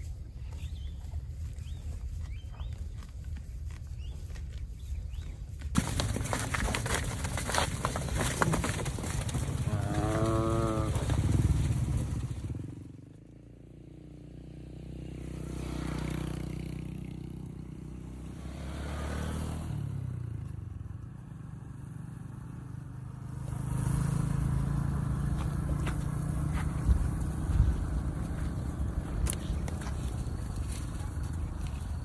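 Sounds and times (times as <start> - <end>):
small motorcycle engine running: 9.3 - 19.2, 20.9 - 31.9.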